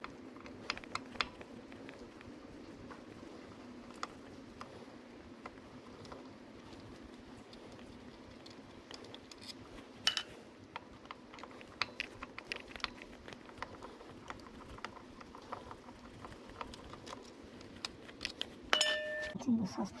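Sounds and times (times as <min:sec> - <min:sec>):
low background noise: 0:00.0 - 0:20.0
metal parts and tools clinking: 0:09.4 - 0:10.3, 0:18.7 - 0:19.4.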